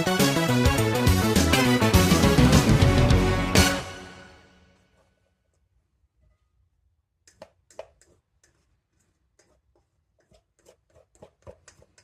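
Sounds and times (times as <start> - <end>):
background music: 0.0 - 4.8.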